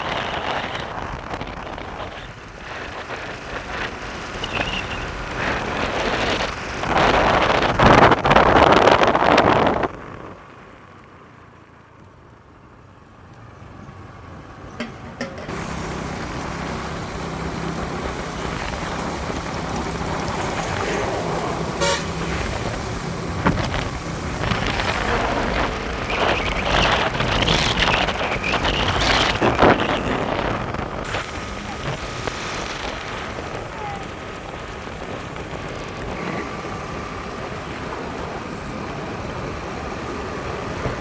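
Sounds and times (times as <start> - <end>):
wind noise on microphone: 0.0 - 10.4, 14.8 - 41.0
vehicle engine hum: 0.0 - 41.0
vehicle horn toot: 21.8 - 22.2.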